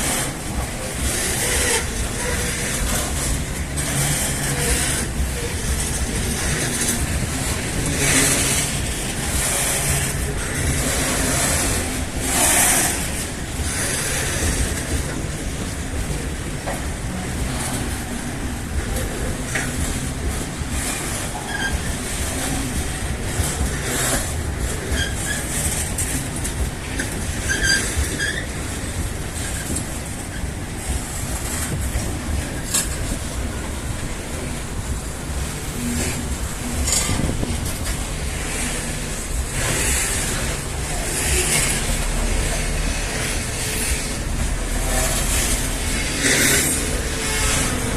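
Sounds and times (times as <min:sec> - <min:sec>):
freight train rumbling past: 0:00.0 - 0:47.9
train wheels squealing: 0:20.8 - 0:22.6, 0:23.4 - 0:26.2, 0:27.3 - 0:28.8.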